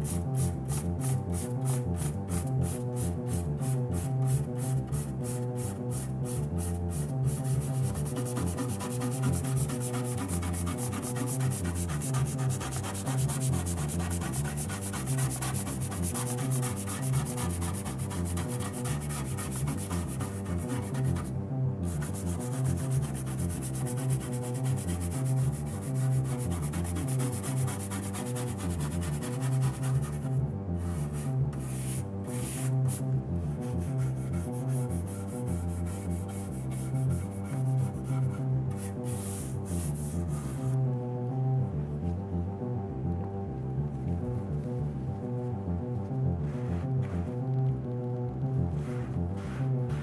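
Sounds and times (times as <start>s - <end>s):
deep synthesizer bass notes: 0.0s - 50.0s.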